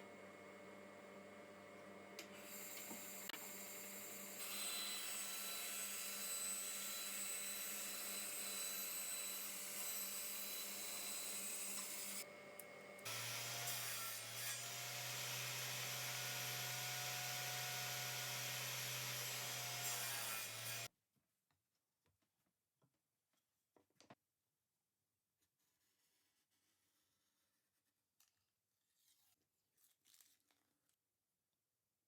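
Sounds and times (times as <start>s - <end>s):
woodworking power tool running: 2.2s - 20.9s.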